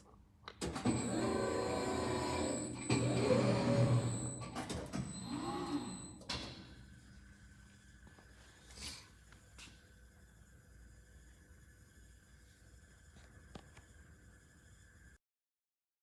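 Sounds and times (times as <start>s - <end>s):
sheet-metal folding machine motors humming: 0.6s - 10.1s.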